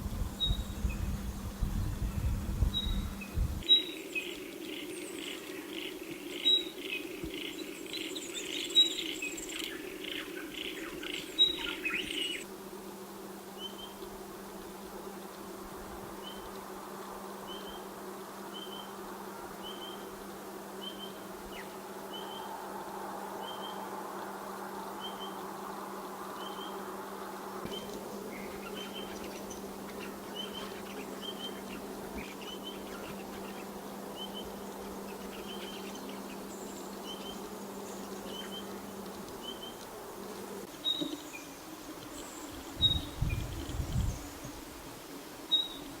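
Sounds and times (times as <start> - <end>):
constant low hum: 0.0 - 3.6.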